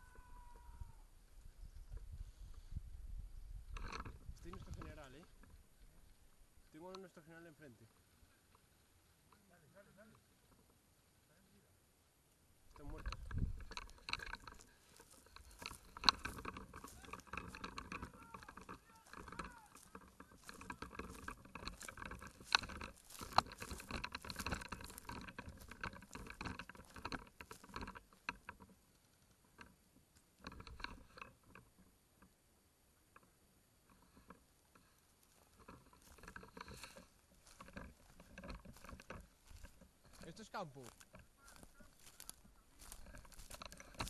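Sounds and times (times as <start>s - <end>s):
rustling through vegetation: 0.0s - 44.0s.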